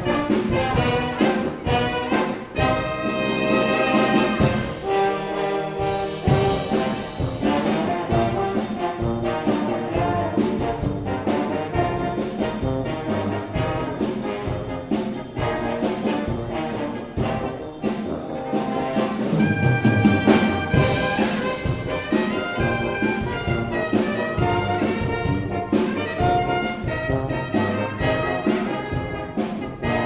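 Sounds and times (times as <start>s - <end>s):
street band playing lively tune: 0.0s - 30.0s.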